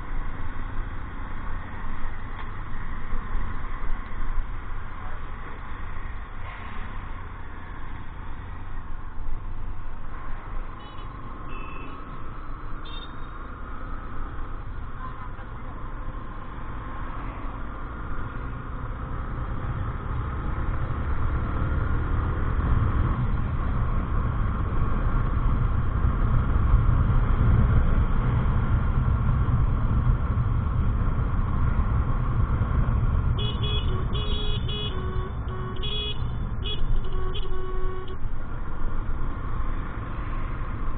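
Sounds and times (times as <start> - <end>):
traffic rumble: 0.0 - 40.9
vehicle horn toots: 10.8 - 12.0, 33.4 - 38.2.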